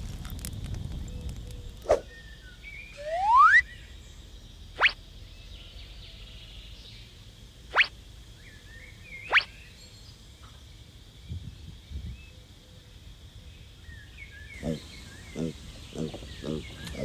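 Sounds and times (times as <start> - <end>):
faint bird chirps: 1.0 - 10.6, 11.2 - 17.0
rising whistle-like swoops: 2.9 - 3.7.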